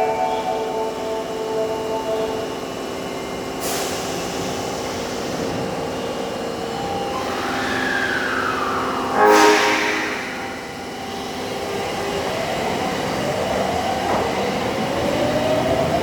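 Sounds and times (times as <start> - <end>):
falling whine: 6.6 - 12.4
compressed air hiss: 7.2 - 10.9.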